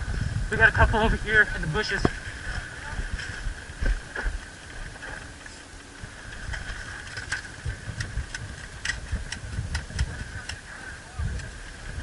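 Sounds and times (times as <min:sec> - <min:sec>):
sharp clicks: 0:07.1 - 0:10.6.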